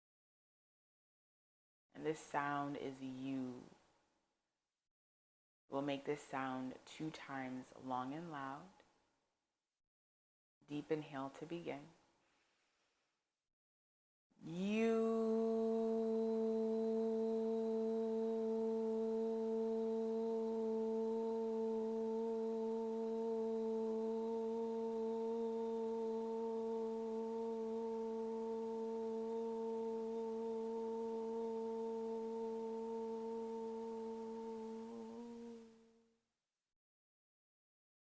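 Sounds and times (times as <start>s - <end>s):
woman chanting a long tone: 2.0s - 3.7s, 14.4s - 36.2s.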